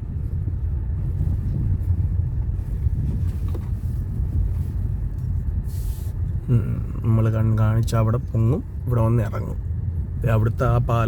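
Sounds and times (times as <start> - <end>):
car engine and tyres rumbling: 0.0 - 11.0.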